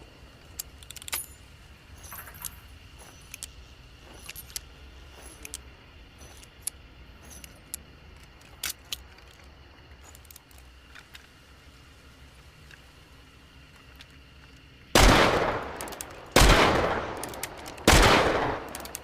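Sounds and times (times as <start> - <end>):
low steady hum: 0.0 - 19.0
revolver metallic clicks and rattles: 0.4 - 11.4, 13.6 - 19.0.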